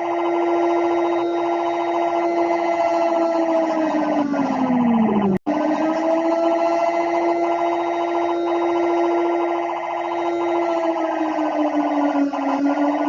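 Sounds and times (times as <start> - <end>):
wailing siren: 0.0 - 13.0.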